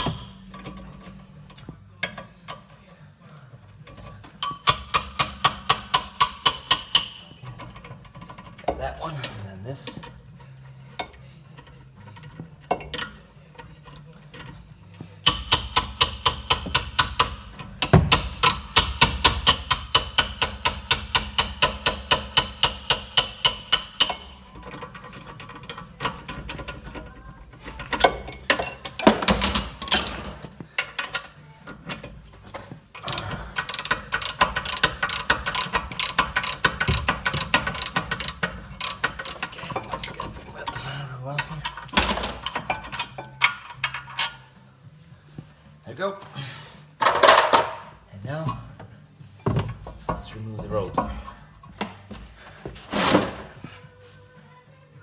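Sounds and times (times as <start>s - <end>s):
ratchet wrench clicking: 0.0s - 0.9s, 4.4s - 8.8s, 15.2s - 27.1s, 27.7s - 40.8s.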